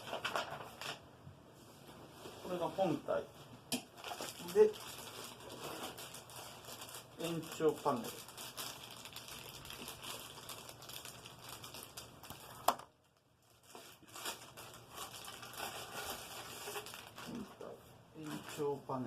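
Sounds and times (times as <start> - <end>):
plastic packaging crinkling: 0.0 - 1.0, 3.9 - 18.8.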